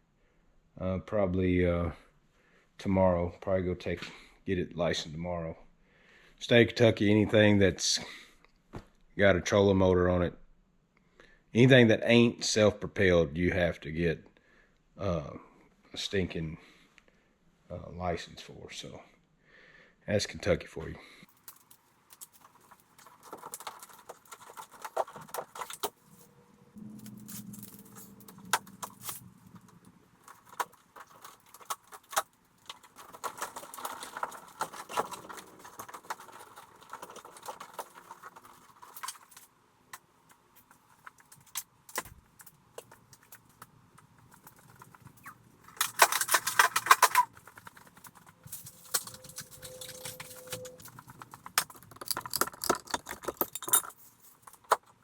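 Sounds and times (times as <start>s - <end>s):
clinks rattles and rustling: 21.3s - 39.6s, 40.2s - 55.0s.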